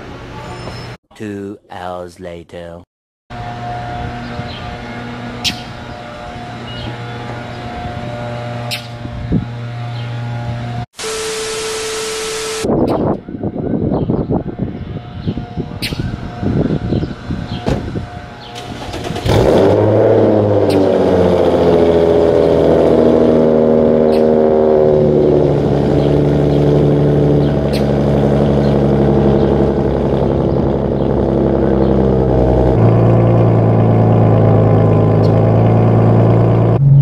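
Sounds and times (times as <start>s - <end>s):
car engine starting and idling: 16.9s - 37.0s.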